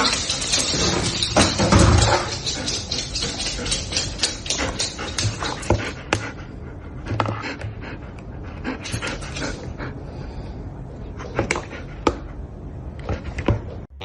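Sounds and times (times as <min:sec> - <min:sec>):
dog panting: 0:00.0 - 0:10.0.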